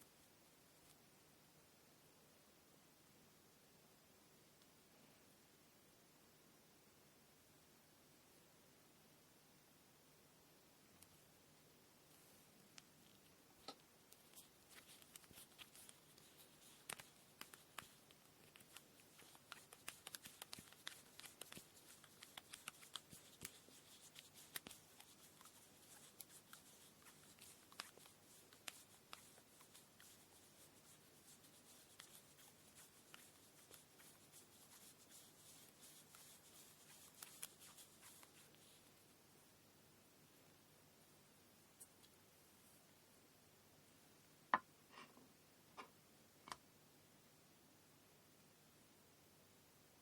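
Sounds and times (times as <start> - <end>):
thread rustling: 12.1 - 39.1.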